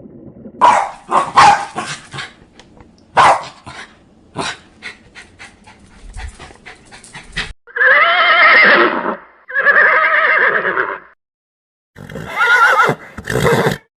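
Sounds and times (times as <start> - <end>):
horse neighing: 7.7 - 11.1, 12.0 - 13.8.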